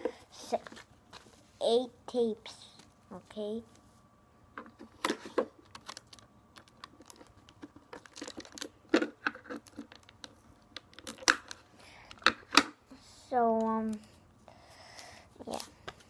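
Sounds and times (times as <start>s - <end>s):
paper crinkling: 5.0s - 10.3s
tape clicks: 5.6s - 12.7s.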